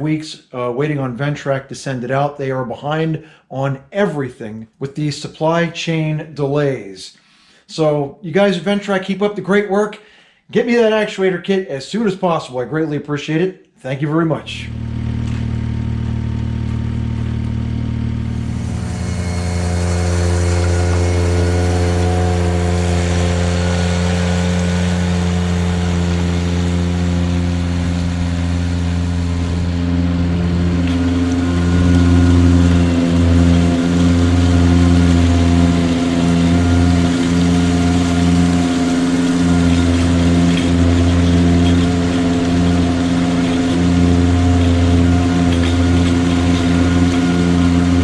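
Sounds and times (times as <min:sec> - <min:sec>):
tractor engine running: 0:14.6 - 0:48.0.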